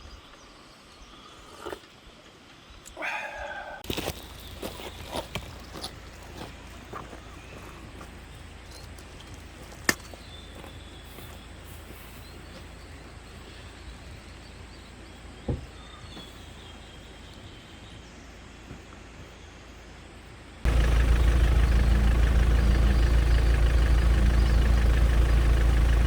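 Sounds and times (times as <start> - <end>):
low hum: 20.7 - 26.0.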